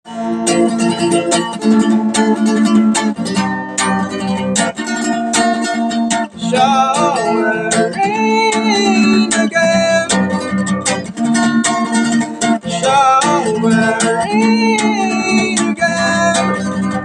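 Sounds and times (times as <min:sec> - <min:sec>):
acoustic guitar strumming: 0:00.0 - 0:17.0
person singing: 0:00.1 - 0:04.7, 0:06.3 - 0:10.6, 0:12.4 - 0:17.0.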